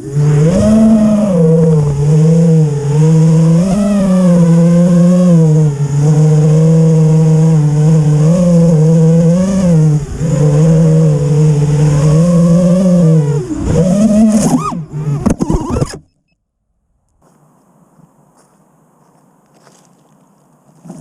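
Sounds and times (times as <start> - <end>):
quadcopter motors buzzing: 0.0 - 16.1.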